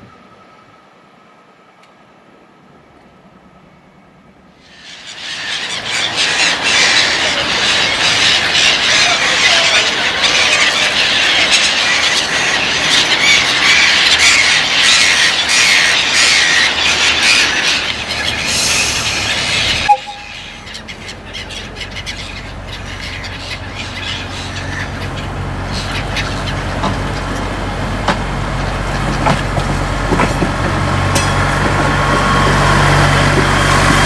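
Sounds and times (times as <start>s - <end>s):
steel wheels rushing on rail: 0.0s - 34.0s
wheels clattering over rail joints: 20.6s - 34.0s.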